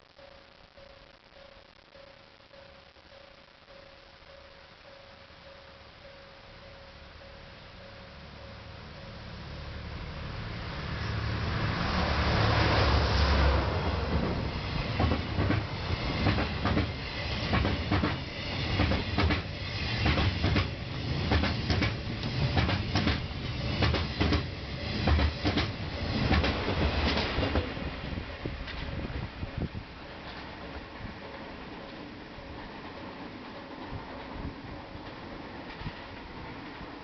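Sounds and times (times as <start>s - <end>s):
train wheels clattering over rail joints: 14.1s - 27.8s.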